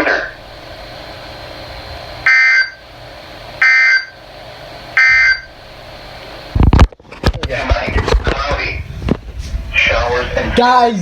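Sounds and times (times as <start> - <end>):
digital data tone bursts: 2.2 - 2.8, 3.6 - 4.2, 5.0 - 5.5.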